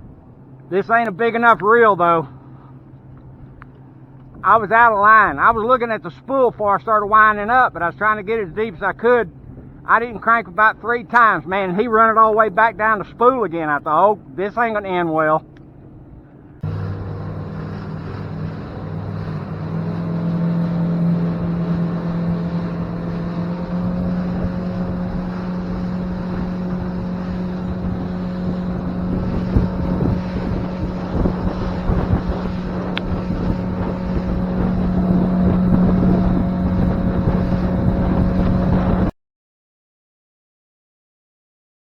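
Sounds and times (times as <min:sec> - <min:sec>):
wind buffeting microphone: 0:00.0 - 0:06.1, 0:15.7 - 0:39.1
motorboat engine running: 0:00.0 - 0:39.1.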